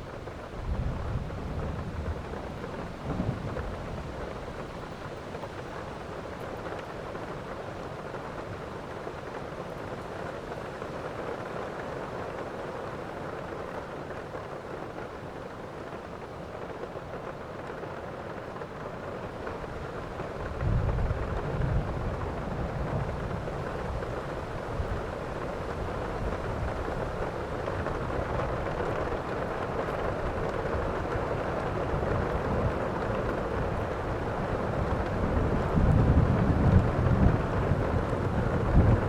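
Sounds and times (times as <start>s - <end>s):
heavy rain: 0.0s - 39.0s
thunder rumbling: 31.9s - 39.0s.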